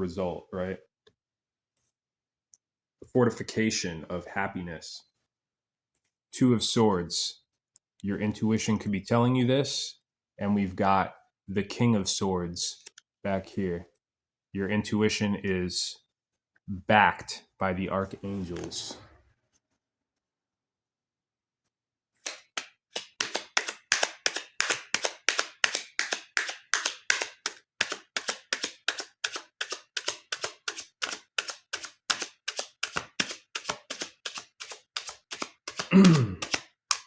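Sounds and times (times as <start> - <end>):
cards being shuffled: 22.2 - 37.0.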